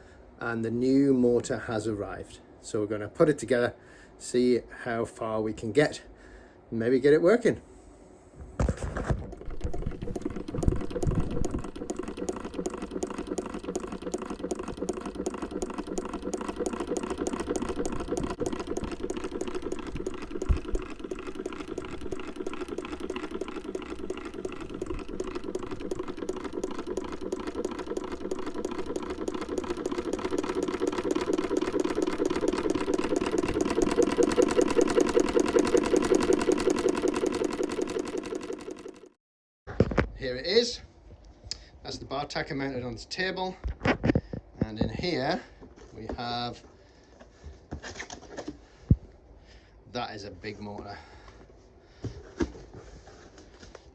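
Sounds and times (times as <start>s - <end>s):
sewing machine ticking: 9.2s - 39.2s.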